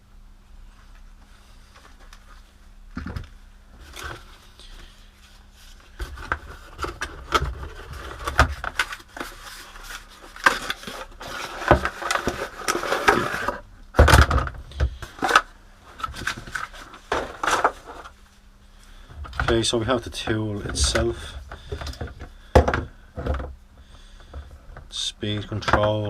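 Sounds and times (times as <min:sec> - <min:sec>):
tool case handling clicks and knocks: 0:11.6 - 0:18.1.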